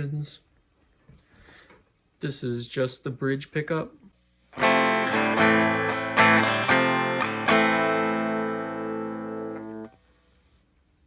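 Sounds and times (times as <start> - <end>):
electric guitar strummed chords: 4.6 - 10.0.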